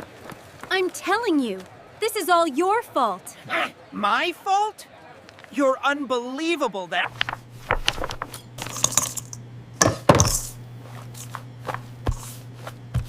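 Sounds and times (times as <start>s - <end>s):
steady low hum: 7.0s - 13.0s
dishes and utensils clinking: 8.3s - 10.6s.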